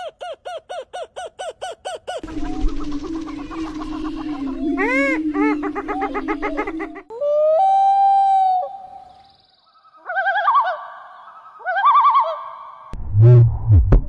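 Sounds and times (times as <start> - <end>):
bird whistling and warbling: 2.2 - 7.1
low loud sound: 2.2 - 7.1.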